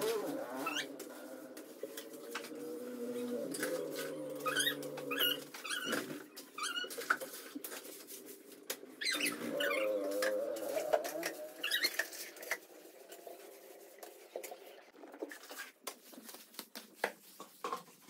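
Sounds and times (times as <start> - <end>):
parakeet chirping and squawking: 0.4 - 1.0, 3.6 - 7.0, 8.9 - 12.4.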